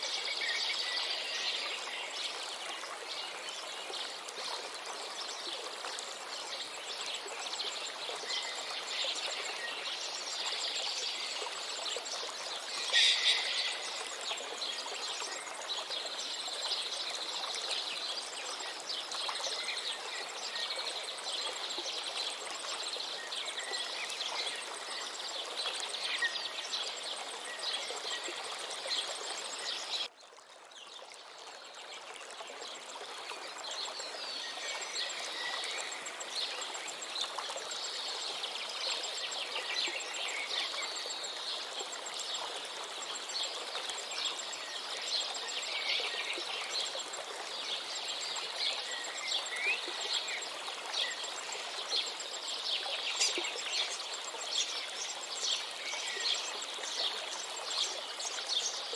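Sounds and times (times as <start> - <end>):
river water running: 0.0 - 58.9
small birds chirping: 12.3 - 15.4.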